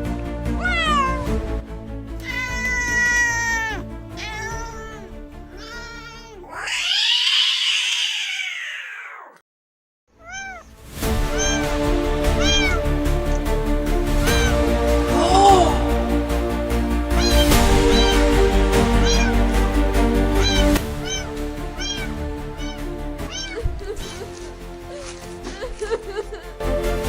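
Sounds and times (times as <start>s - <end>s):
background music: 0.0s - 7.2s, 10.2s - 27.0s
kittens meowing: 0.5s - 1.4s, 2.2s - 9.4s, 10.2s - 13.0s, 14.2s - 14.7s, 17.1s - 25.3s.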